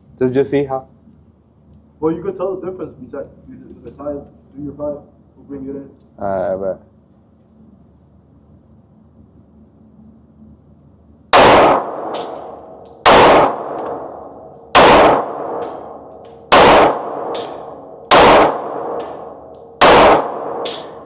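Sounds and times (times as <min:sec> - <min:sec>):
handgun shots with echo: 0:11.4 - 0:21.0.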